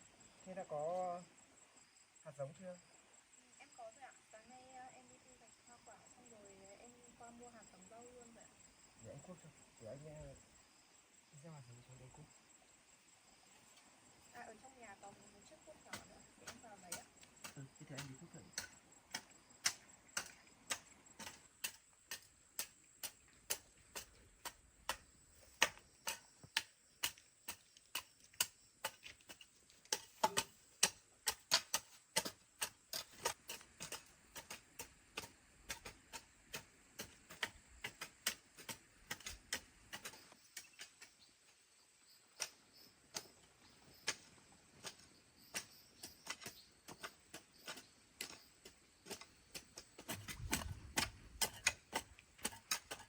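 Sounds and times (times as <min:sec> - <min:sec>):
hoe chopping into soil: 0:15.9 - 0:41.2, 0:44.0 - 0:53.0.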